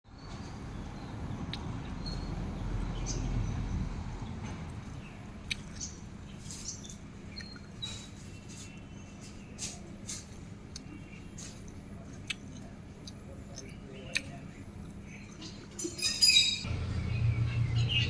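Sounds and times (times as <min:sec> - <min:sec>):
small birds chirping: 0:00.1 - 0:18.0.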